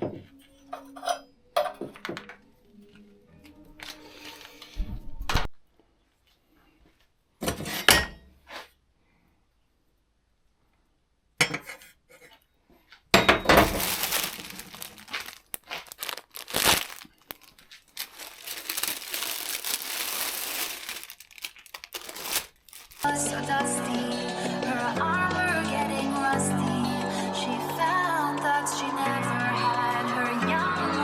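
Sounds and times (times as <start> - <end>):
rustling and crinkling: 12.8 - 23.1.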